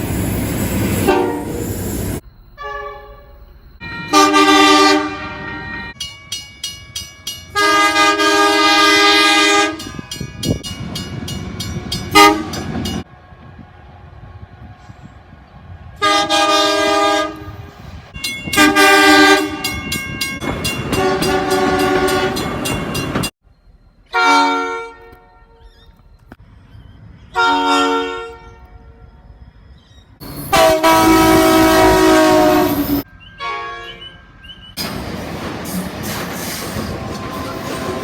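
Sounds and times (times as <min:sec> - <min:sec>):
train rumbling: 0:00.0 - 0:38.0
train horn blasts: 0:01.0 - 0:01.7, 0:02.6 - 0:06.0, 0:07.5 - 0:10.2, 0:12.0 - 0:13.0, 0:16.0 - 0:23.3, 0:24.1 - 0:25.6, 0:27.4 - 0:29.2, 0:30.4 - 0:34.1.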